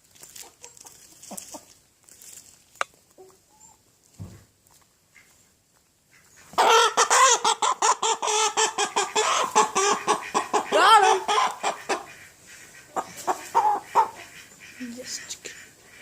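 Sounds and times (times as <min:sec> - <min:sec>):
chicken squawking: 0:06.1 - 0:16.0.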